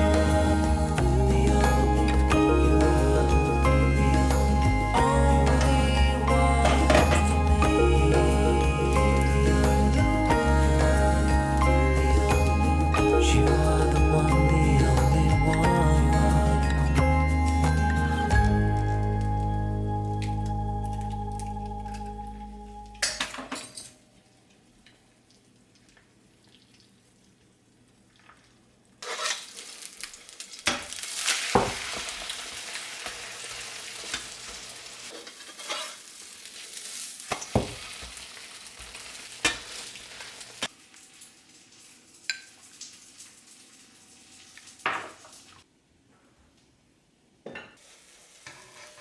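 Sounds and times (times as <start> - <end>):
utensil scraping a pan: 29.0 - 29.5, 35.2 - 36.0
food sizzling in a pan: 29.0 - 45.6, 47.8 - 49.0.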